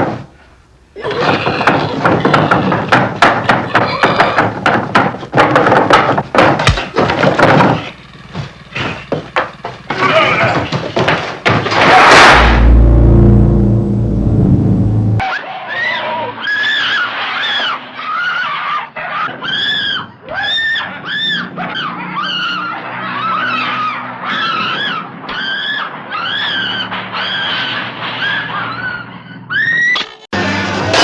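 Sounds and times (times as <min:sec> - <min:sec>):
shrill high-pitched shrieks: 0:15.2 - 0:30.2.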